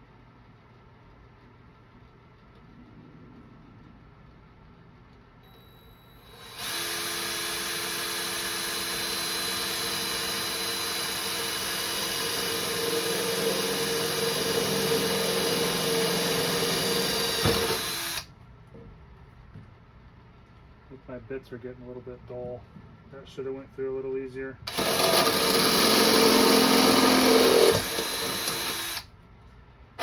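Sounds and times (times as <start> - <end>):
power drill boring through metal: 6.2 - 18.3, 24.7 - 29.1.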